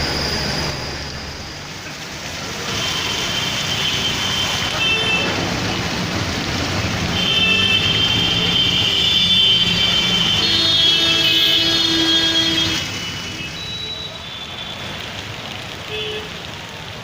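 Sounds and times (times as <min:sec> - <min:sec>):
heavy rain falling: 0:00.0 - 0:17.0.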